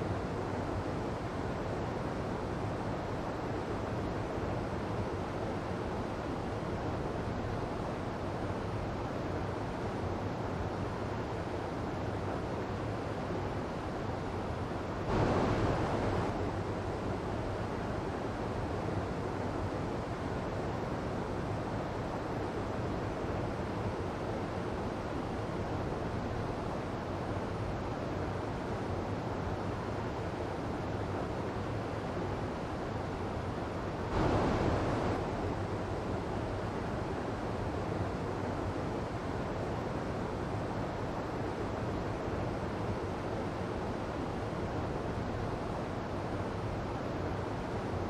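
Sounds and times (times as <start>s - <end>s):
waterfall rushing hiss: 34.1s - 35.8s.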